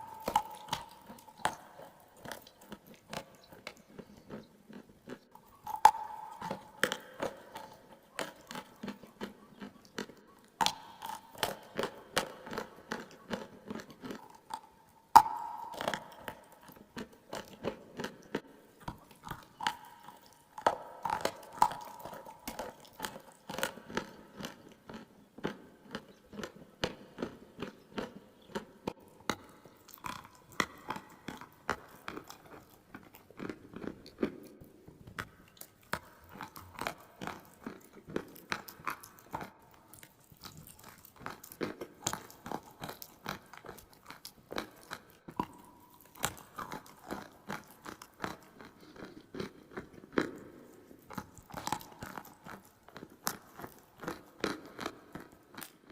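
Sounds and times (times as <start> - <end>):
person biting and chewing clay: 0.0 - 55.9
wet mouth sounds: 0.0 - 55.9.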